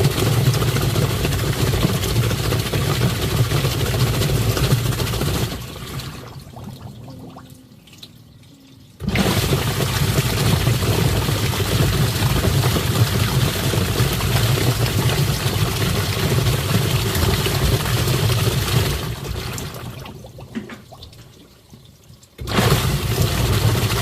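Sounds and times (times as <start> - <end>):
washing machine motor humming: 0.0 - 21.3, 22.4 - 24.0
water churning and sloshing: 0.0 - 24.0.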